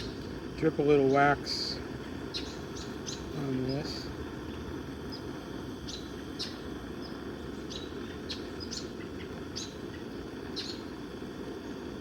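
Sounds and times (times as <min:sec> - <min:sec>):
small bird chirping: 0:02.3 - 0:03.9.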